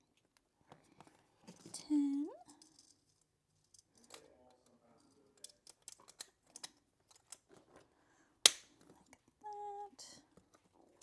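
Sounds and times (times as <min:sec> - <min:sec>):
plastic pieces clicking and tapping: 0:05.4 - 0:07.5.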